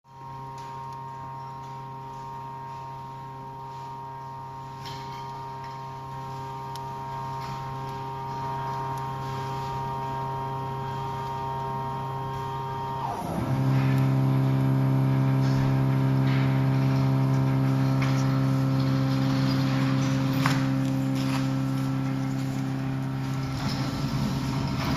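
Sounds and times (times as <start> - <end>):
cutting machine motor hum: 5.6 - 24.9.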